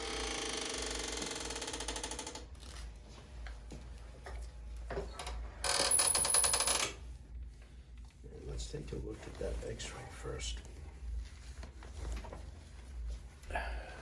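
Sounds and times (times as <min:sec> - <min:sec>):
motorised table buzzing: 0:00.0 - 0:02.9, 0:05.0 - 0:07.0.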